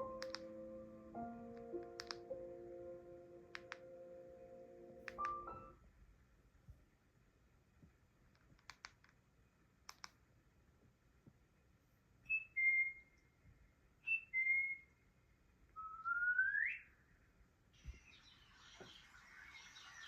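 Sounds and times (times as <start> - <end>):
soft clicks: 0.0 - 0.5, 1.5 - 2.4, 3.5 - 3.9, 5.0 - 5.7, 7.8 - 10.3
whistles: 12.3 - 15.1, 15.8 - 17.1, 17.8 - 20.0.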